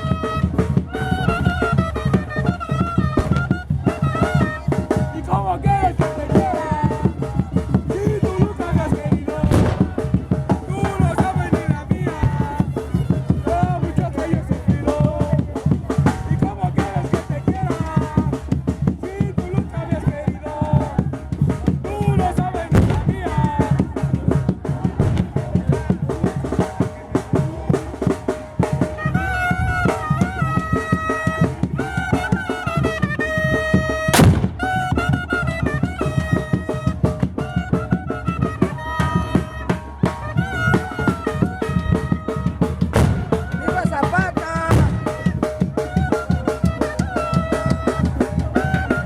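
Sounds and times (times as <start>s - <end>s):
high wind instrument melody: 0.0s - 20.1s, 22.0s - 24.0s, 28.6s - 49.0s
fast drum beat: 0.0s - 49.0s
sharp loud hit: 34.2s - 34.6s.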